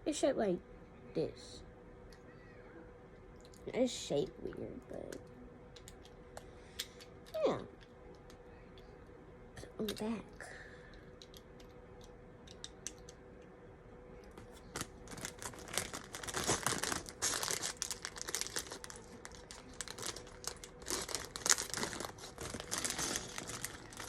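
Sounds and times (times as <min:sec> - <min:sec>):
plastic bags crinkling: 0:14.4 - 0:24.0.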